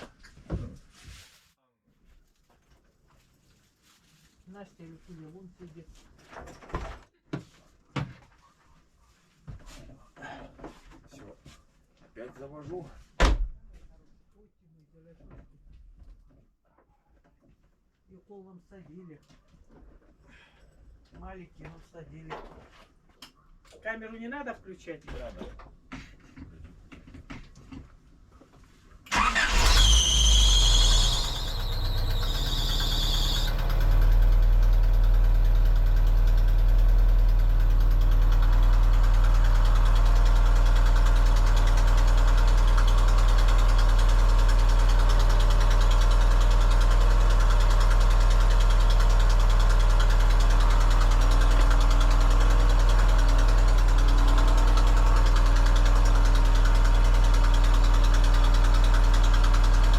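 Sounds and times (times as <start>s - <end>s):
car engine starting and idling: 29.1s - 59.9s.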